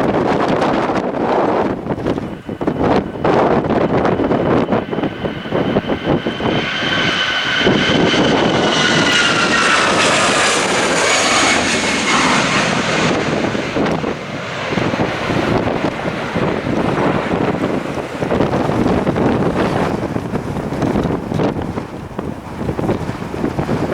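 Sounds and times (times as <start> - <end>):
airliner engines whining past: 0.0 - 23.9
wind gusting on microphone: 0.0 - 23.9.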